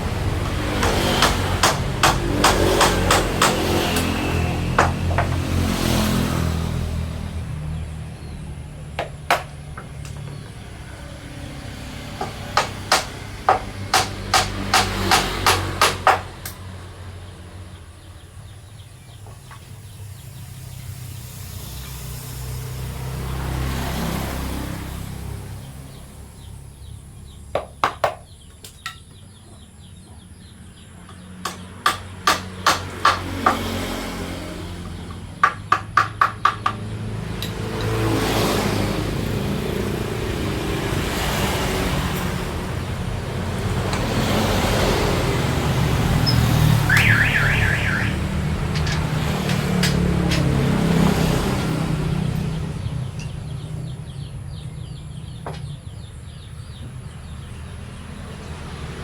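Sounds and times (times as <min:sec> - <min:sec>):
low rumble of passing vehicles: 0:00.0 - 0:59.0
hammer knocking on wood: 0:00.1 - 0:05.8, 0:09.0 - 0:10.6, 0:12.1 - 0:16.5, 0:27.5 - 0:29.0, 0:31.1 - 0:34.1, 0:34.8 - 0:38.0.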